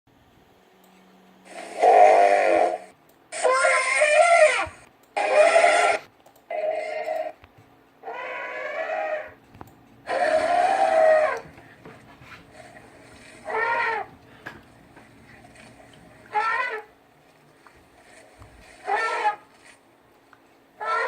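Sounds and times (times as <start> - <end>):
elephant trumpeting: 1.5 - 7.2, 8.0 - 9.4, 10.1 - 11.5, 12.5 - 14.2, 15.3 - 17.0, 18.0 - 19.8, 20.8 - 21.0.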